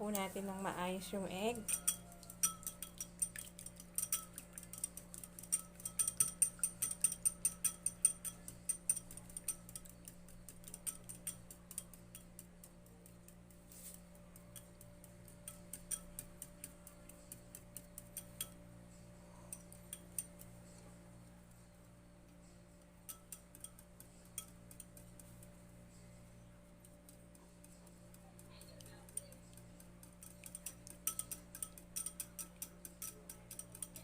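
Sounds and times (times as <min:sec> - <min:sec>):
utensil clicking against bowl: 0:01.5 - 0:18.6, 0:19.5 - 0:20.8, 0:22.3 - 0:25.7, 0:26.6 - 0:34.0.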